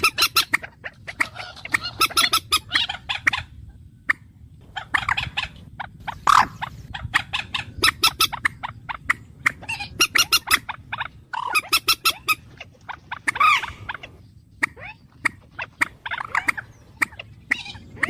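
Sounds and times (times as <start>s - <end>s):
bird chirps: 7.4s - 18.0s.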